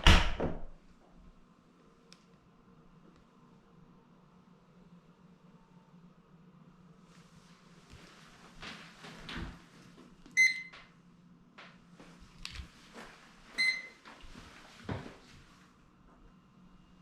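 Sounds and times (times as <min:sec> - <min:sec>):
low steady hum: 0:00.0 - 0:17.0
short electronic beeps: 0:10.4 - 0:10.7, 0:13.6 - 0:14.0.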